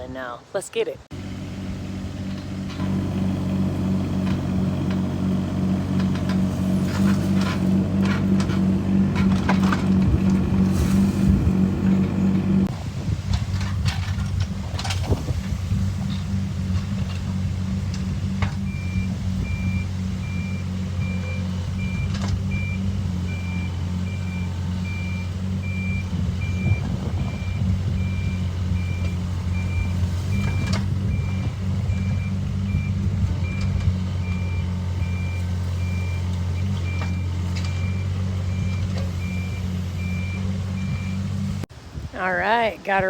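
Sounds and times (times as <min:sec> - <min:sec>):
diesel engine running: 0:01.1 - 0:42.9
reversing alarm beeps: 0:18.6 - 0:41.2.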